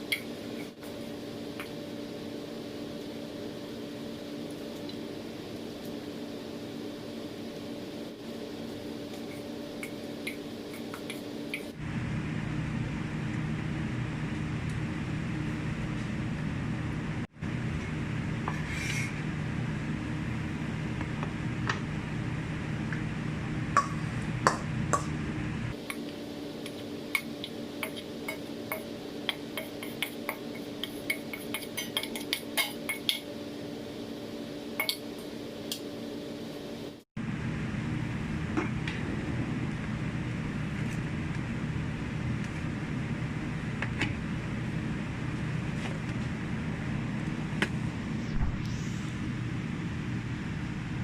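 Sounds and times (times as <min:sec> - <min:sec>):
steady low hum: 0:00.0 - 0:51.0
utensils clinking against dishes: 0:27.2 - 0:33.3, 0:34.8 - 0:35.2.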